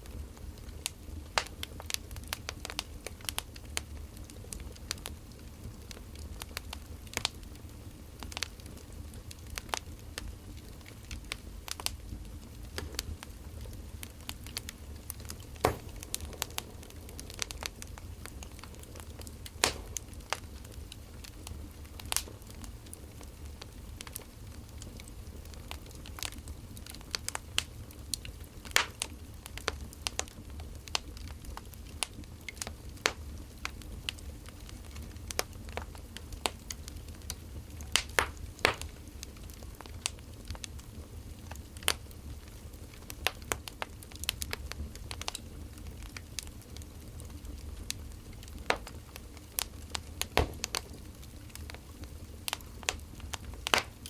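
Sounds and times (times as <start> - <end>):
wood fire crackling and popping: 0.0 - 54.0
steady low hum: 9.0 - 24.7.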